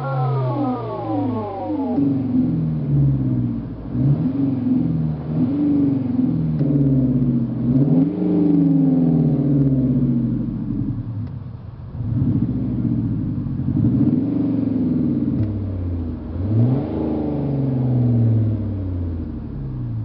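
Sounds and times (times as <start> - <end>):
synthesized engine note: 0.0 - 3.9.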